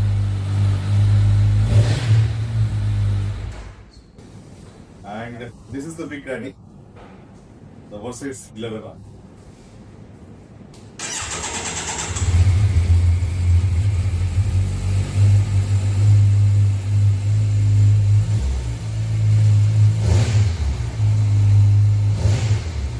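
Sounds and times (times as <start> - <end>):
starter motor cranking: 11.0 - 12.7.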